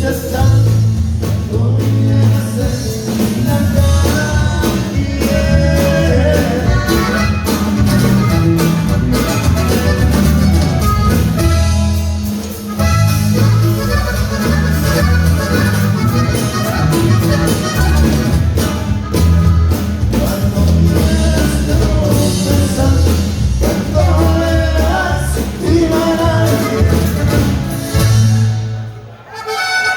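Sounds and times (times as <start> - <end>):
person singing: 0.0 - 7.6, 20.0 - 28.0
bass and drums: 0.0 - 29.1
accordion melody: 2.8 - 29.9.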